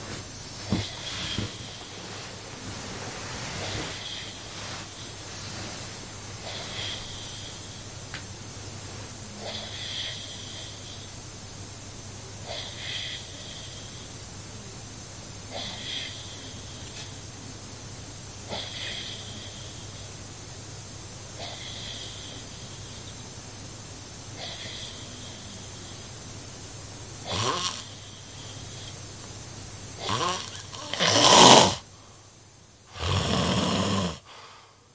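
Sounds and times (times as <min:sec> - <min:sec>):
man snoring: 0:00.6 - 0:01.9, 0:27.3 - 0:28.0, 0:30.0 - 0:31.9, 0:32.9 - 0:34.6.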